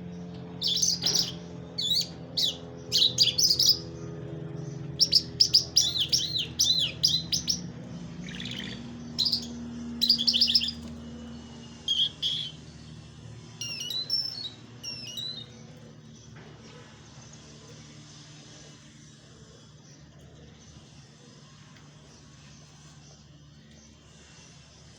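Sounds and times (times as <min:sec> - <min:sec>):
small birds chirping: 0:00.0 - 0:24.6
low steady hum: 0:00.0 - 0:24.9.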